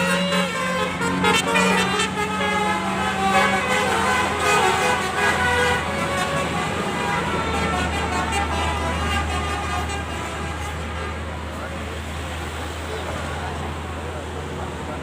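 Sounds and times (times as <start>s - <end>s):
multi-tone bus horn tune: 0.0s - 11.8s
passing bus and traffic: 0.0s - 15.0s.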